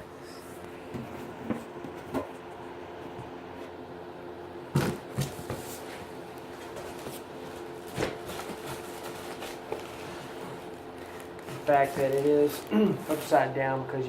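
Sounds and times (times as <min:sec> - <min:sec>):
cardboard rustling: 0:05.1 - 0:13.5.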